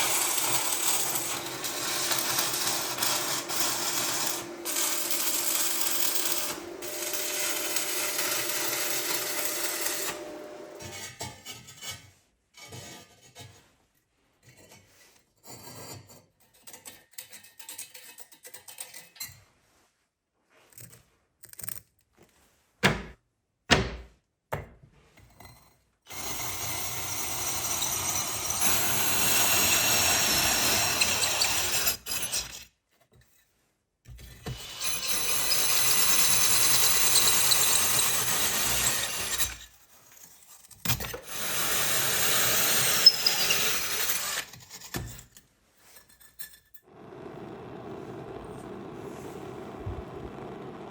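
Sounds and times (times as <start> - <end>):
rasping tool noise: 0.0 - 11.3, 26.1 - 32.7, 34.4 - 39.9, 41.0 - 45.1
sharp knocks: 22.8 - 24.7.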